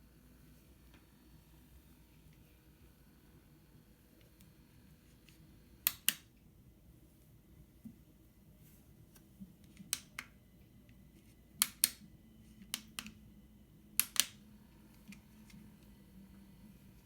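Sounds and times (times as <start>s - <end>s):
faint low hum: 0.0s - 17.0s
sharp clicks in pairs: 5.9s - 6.3s, 11.6s - 13.2s, 14.0s - 14.4s.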